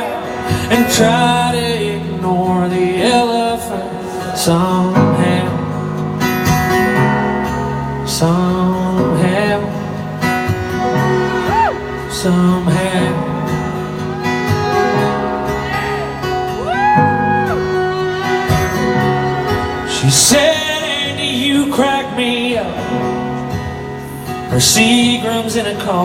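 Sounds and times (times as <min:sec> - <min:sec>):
man singing: 0:00.0 - 0:06.2, 0:07.8 - 0:23.6, 0:24.3 - 0:26.0
country band playing: 0:00.0 - 0:26.0
sliding guitar lead notes: 0:00.0 - 0:26.0.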